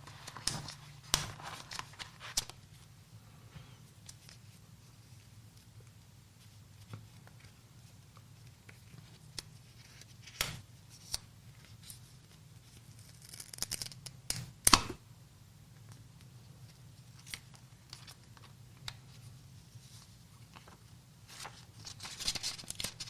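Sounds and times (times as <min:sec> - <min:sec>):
paper and plastic packaging crinkling: 0:00.0 - 0:02.6, 0:20.4 - 0:23.0.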